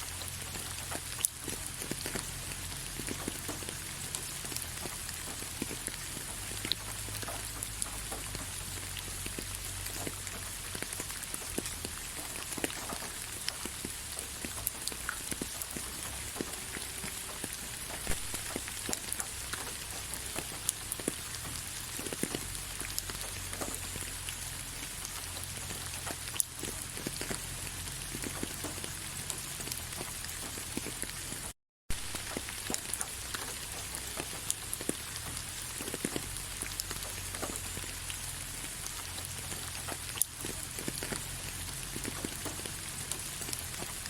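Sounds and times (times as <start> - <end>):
gentle steady rain: 0.0 - 44.0.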